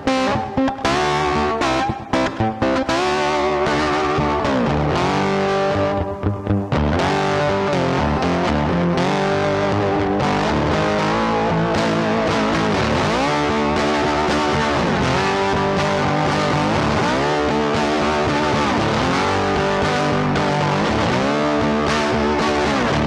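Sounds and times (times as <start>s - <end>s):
distorted electric guitar music: 0.0s - 23.0s.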